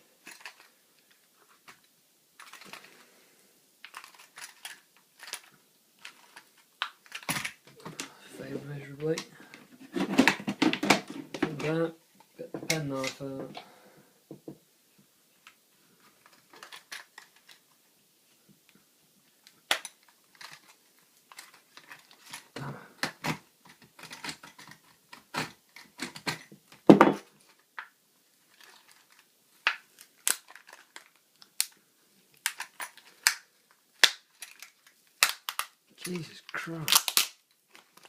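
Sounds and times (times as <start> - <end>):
plastic packaging crackling: 0.2 - 1.2, 3.8 - 8.2, 27.4 - 38.0
loud plastic crack: 29.6 - 31.8, 32.4 - 38.0.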